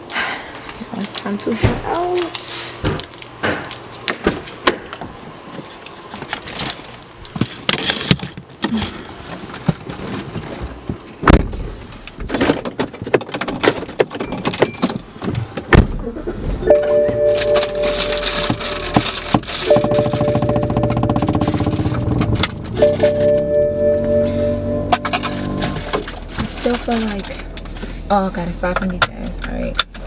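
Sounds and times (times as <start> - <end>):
steady two-note tone: 16.7 - 18.9, 19.7 - 21.2, 22.8 - 25.9
heavy thumps: 18.4 - 26.6.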